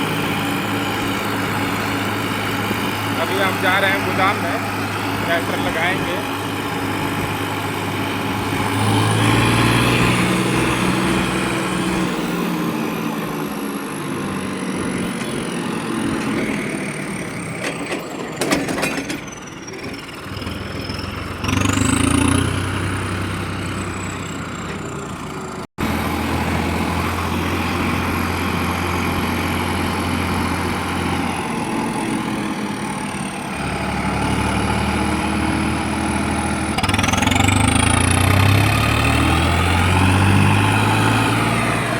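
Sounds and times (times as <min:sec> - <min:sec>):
tractor diesel engine running: 0:00.0 - 0:41.9
clatter of knocks: 0:17.6 - 0:20.1.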